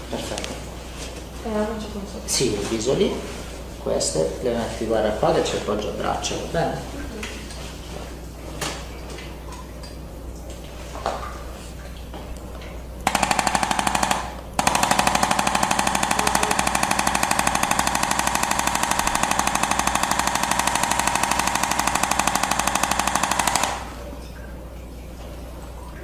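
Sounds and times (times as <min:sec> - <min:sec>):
electric percussion massager hammering: 0:13.1 - 0:24.0.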